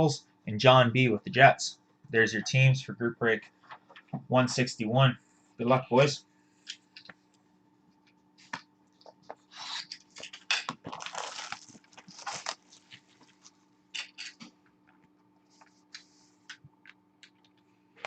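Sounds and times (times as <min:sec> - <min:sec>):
shrink wrap crinkling and tearing: 0:09.5 - 0:13.6.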